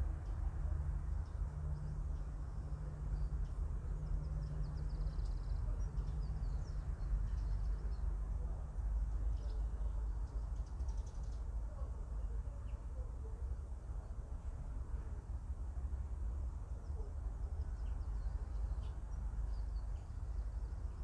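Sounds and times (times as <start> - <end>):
small birds chirping: 1.1 - 13.0, 16.7 - 21.0.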